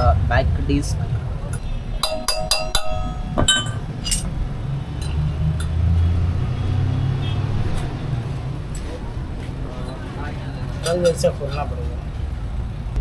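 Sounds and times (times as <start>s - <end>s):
metal tools clinking: 1.6s - 4.4s, 5.0s - 5.8s, 9.8s - 11.9s.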